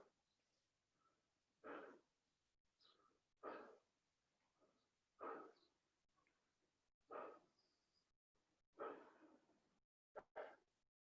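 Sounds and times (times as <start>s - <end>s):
person breathing hard: 1.6s - 2.1s, 5.2s - 5.6s, 8.8s - 9.4s.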